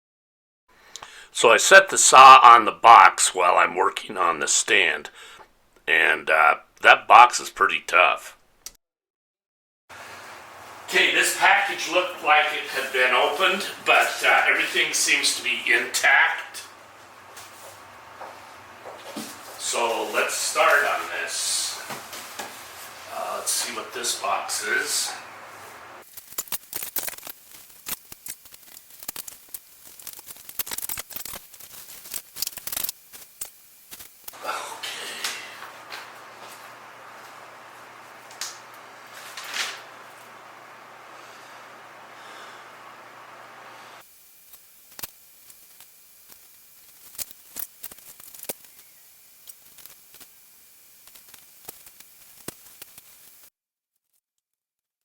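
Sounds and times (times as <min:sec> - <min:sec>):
steady hiss: 0:09.9 - 0:53.5
box packing crackling: 0:19.0 - 0:34.1.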